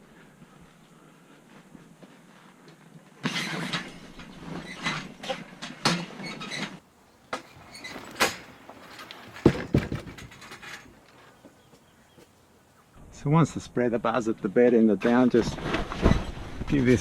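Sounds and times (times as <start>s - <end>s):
metal bars scraping and rattling: 3.3s - 11.2s
knocks: 9.3s - 10.9s.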